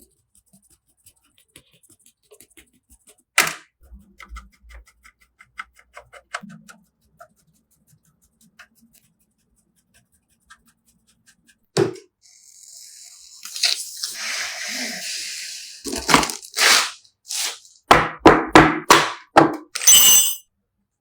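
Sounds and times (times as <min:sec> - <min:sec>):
hiss: 0:12.3 - 0:17.8.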